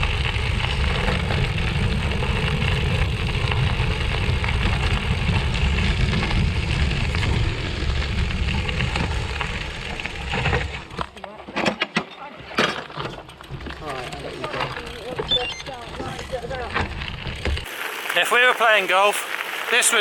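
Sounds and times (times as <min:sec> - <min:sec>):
wind buffeting microphone: 0:00.0 - 0:11.0
tyres crunching over gravel: 0:00.0 - 0:11.3, 0:13.2 - 0:20.0.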